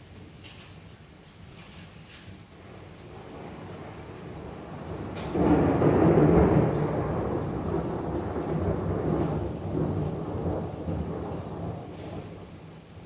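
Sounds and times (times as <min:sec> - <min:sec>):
thunder rumbling: 0:02.6 - 0:13.0.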